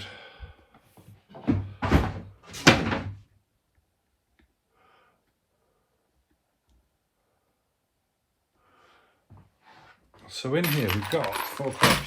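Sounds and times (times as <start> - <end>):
cabinet panel rattling and banging: 1.5 - 3.2.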